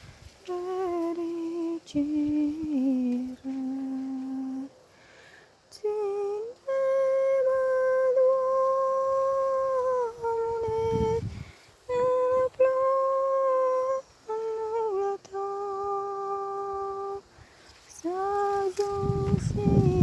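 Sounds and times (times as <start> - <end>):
person singing long notes: 0.4 - 4.7, 5.7 - 17.3, 17.9 - 20.0
wind buffeting microphone: 9.0 - 12.5, 18.4 - 20.0.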